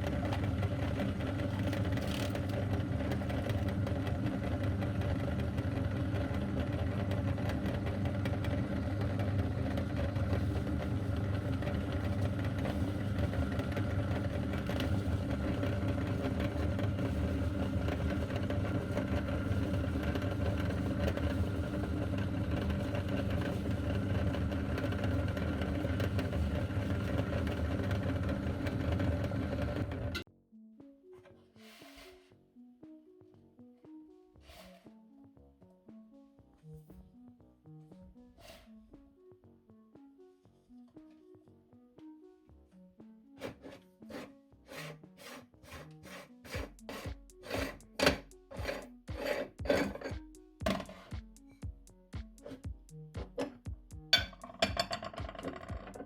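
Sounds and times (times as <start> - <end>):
meat grinder motor running: 0.0 - 30.2, 44.7 - 50.8, 55.1 - 56.0.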